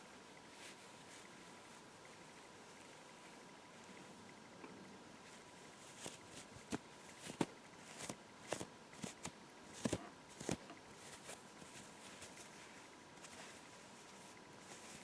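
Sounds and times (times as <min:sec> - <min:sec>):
hair being stroked: 0:05.2 - 0:15.0.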